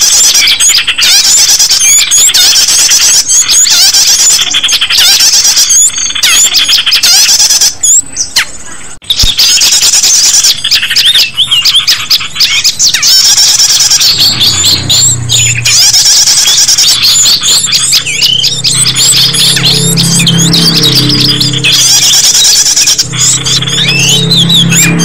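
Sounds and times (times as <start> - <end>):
small birds chirping: 0.0 - 25.0
low hum: 13.9 - 25.0.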